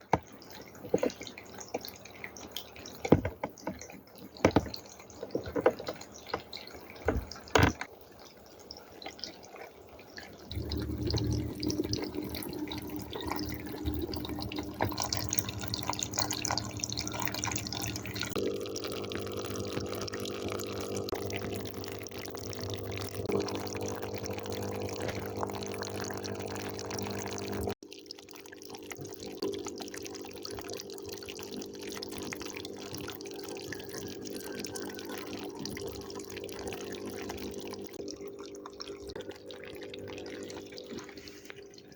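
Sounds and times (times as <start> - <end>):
running water: 0.0 - 41.9
water dripping: 0.0 - 41.9
low steady hum: 10.5 - 27.8.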